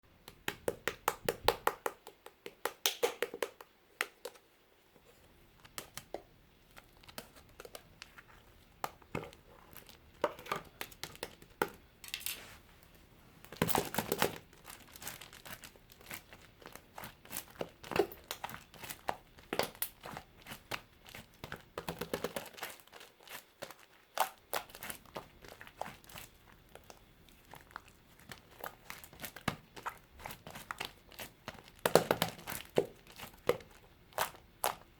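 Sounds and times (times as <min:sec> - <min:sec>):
slime squished by hand: 0:13.6 - 0:34.9.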